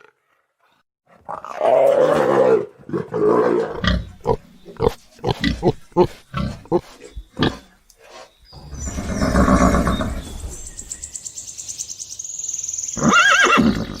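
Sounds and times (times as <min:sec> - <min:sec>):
animal grunt: 0:01.3 - 0:10.7.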